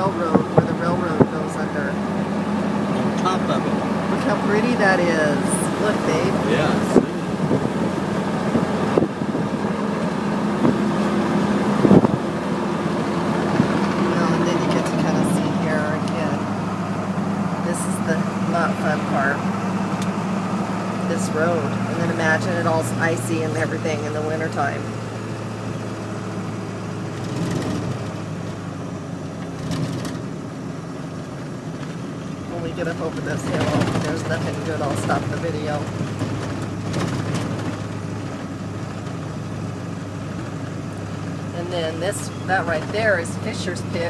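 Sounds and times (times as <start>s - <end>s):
car interior road drone: 0.0s - 44.0s
car bumps on rough road: 6.6s - 16.0s, 27.0s - 28.6s, 29.4s - 30.4s, 32.9s - 39.5s.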